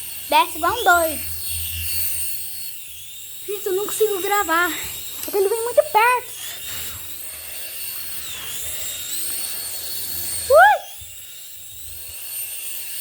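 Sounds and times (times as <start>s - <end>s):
toy helicopter motor whining: 0.0s - 13.0s
person crying out: 10.5s - 11.0s.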